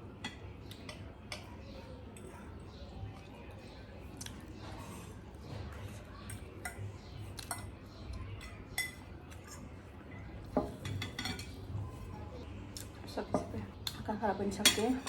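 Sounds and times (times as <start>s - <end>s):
utensils clinking on a plate: 0.2s - 1.6s, 4.2s - 9.8s, 10.4s - 12.1s, 13.2s - 15.0s.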